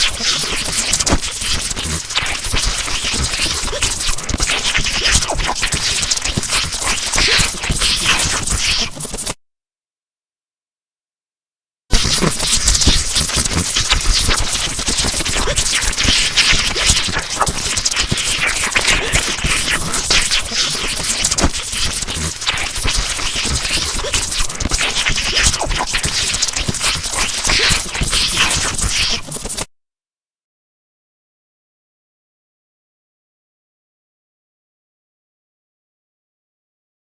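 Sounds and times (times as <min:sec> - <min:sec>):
electrical sparks crackling: 0:00.0 - 0:09.4, 0:11.9 - 0:29.7.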